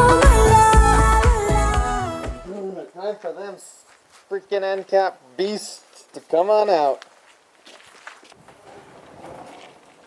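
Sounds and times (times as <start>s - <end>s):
faint footsteps: 2.4s - 10.0s.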